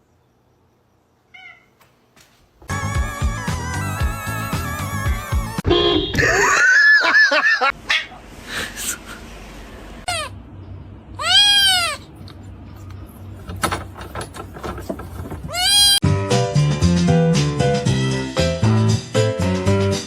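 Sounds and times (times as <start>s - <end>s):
music: 2.7s - 5.7s, 16.0s - 20.0s
animal calling: 11.2s - 12.2s.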